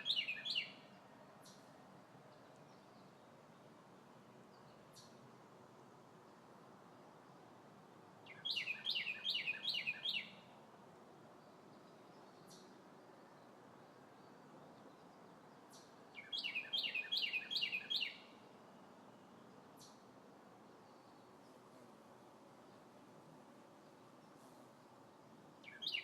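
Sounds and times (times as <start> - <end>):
bird whistling song: 0.0 - 0.8, 8.3 - 10.4, 15.7 - 18.3, 25.6 - 26.0.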